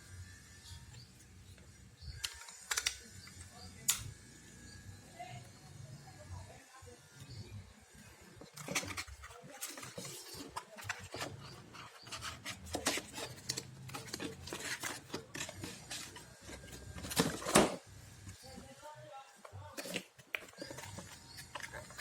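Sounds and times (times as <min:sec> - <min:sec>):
plastic and metal parts clicking: 0:02.1 - 0:04.1, 0:08.4 - 0:17.8, 0:19.4 - 0:22.0.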